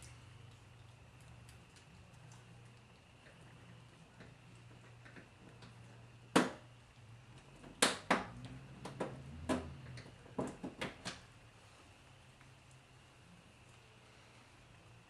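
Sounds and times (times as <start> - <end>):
steady low hum: 0.0 - 15.0
tools and car parts knocking: 7.6 - 11.2.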